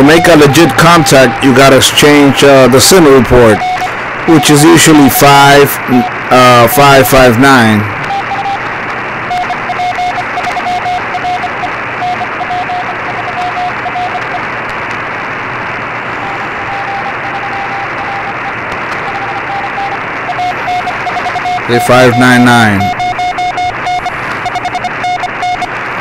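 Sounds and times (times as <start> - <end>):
morse code beeps: 0.0 - 8.6, 9.3 - 14.4, 16.2 - 25.7
radio band noise hiss: 0.0 - 26.0.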